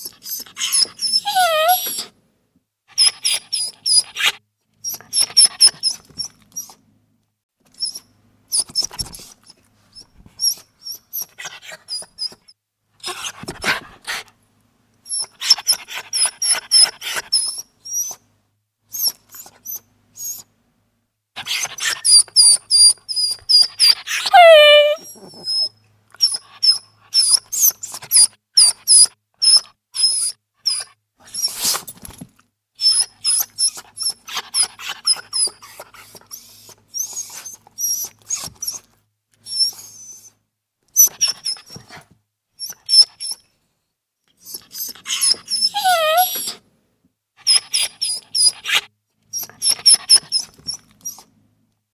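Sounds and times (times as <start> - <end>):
dog whining: 0.0 - 2.1, 2.9 - 6.8, 7.8 - 14.2, 15.1 - 18.2, 18.9 - 20.5, 21.4 - 31.8, 32.8 - 40.4, 41.0 - 42.0, 42.6 - 43.4, 44.3 - 46.6, 47.4 - 51.4
small dog whimpering: 0.0 - 2.1, 3.0 - 6.8, 15.1 - 18.2, 21.4 - 31.6, 32.8 - 40.4, 41.0 - 42.0, 42.6 - 43.4, 44.3 - 46.6, 47.4 - 51.3.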